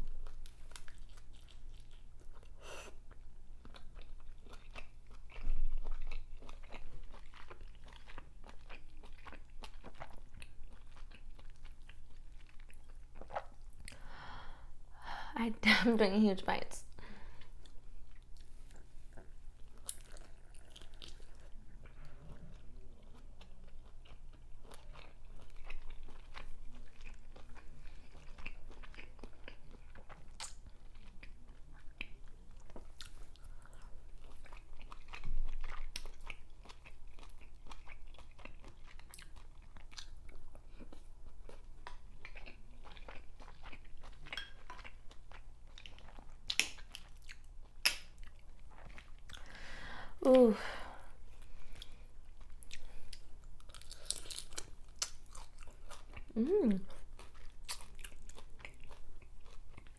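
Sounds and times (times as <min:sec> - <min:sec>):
close-up chewing: 0:00.0 - 0:14.1, 0:17.3 - 0:49.8, 0:51.1 - 0:59.9
wet mouth clicks and smacks: 0:47.8 - 0:48.3.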